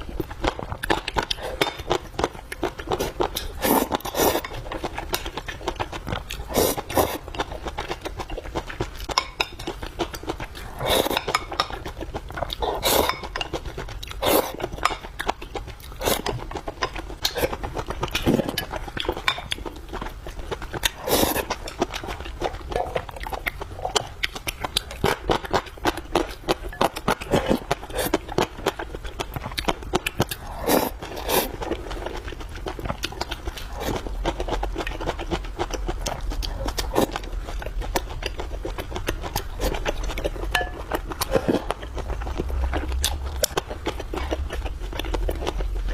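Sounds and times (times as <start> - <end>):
person chewing and biting food: 0.0 - 45.9
utensil clinking against dish: 40.6 - 40.8.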